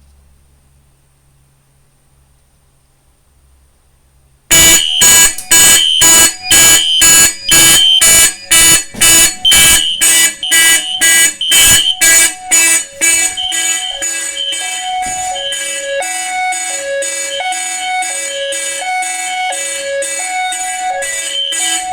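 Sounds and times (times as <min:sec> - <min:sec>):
fire alarm horns blasting: 0:04.5 - 0:21.9.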